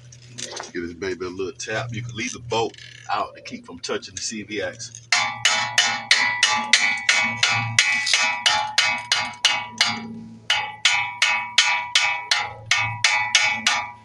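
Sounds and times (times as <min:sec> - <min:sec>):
hammer ringing on steel: 0:05.1 - 0:14.0.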